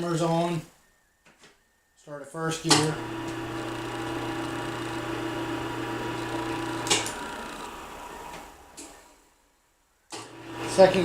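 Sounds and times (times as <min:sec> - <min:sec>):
mixer motor humming: 0:02.7 - 0:09.2, 0:10.1 - 0:11.0.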